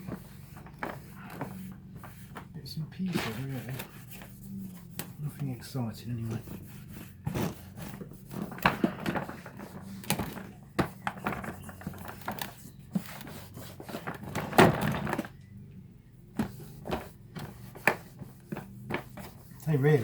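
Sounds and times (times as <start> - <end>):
loud scrape: 3.0 - 5.3
knocks and taps on plastic: 7.3 - 14.8.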